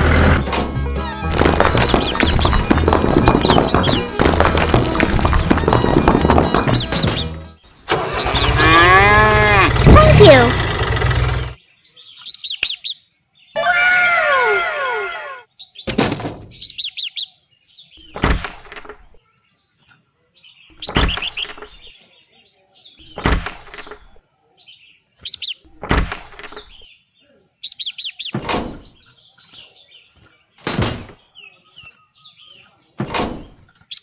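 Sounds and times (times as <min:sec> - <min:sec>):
sharp knocks: 0:00.0 - 0:11.6, 0:15.9 - 0:16.6, 0:28.4 - 0:29.0, 0:30.6 - 0:31.2, 0:33.0 - 0:33.6.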